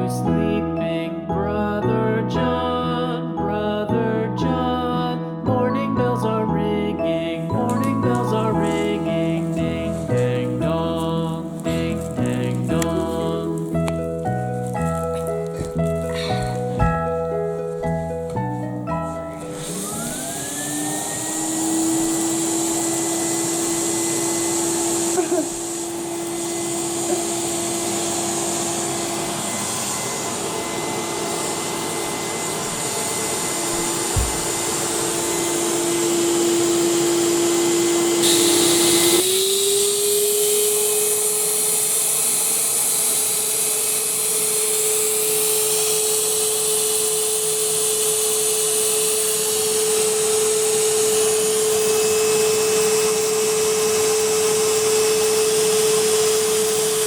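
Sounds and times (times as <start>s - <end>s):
vacuum cleaner motor hum: 7.7s - 57.0s
short thump: 34.2s - 34.5s.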